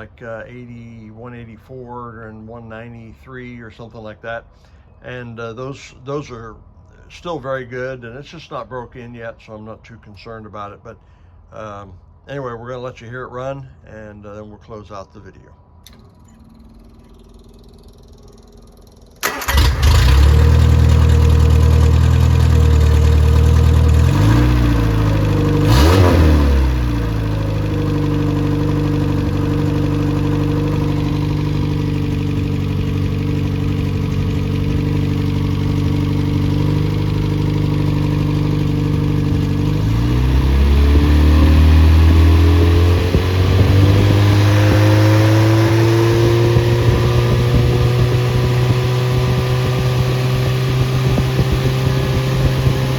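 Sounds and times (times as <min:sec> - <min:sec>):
car engine starting and idling: 0:15.8 - 0:52.9.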